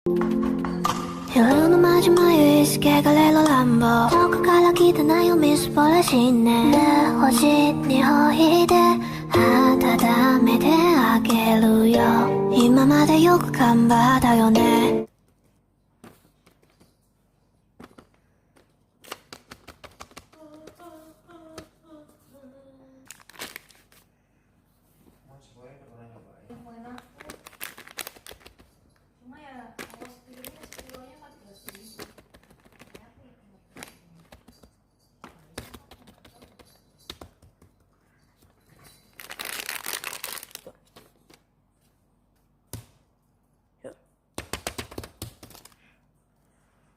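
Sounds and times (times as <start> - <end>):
faint high voice singing: 20.4 - 23.1
crinkling and rustling: 23.0 - 24.1, 26.8 - 29.0, 29.6 - 42.0.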